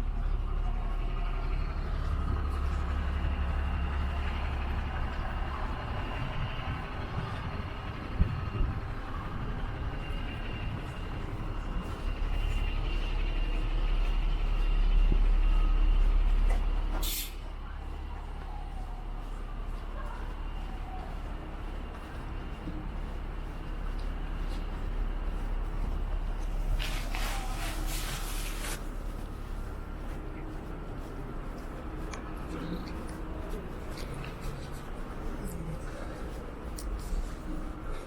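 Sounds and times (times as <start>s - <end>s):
city street traffic: 0.0s - 38.0s
heavy vehicle engine rumble: 0.0s - 38.0s
air brake hiss: 17.0s - 17.4s.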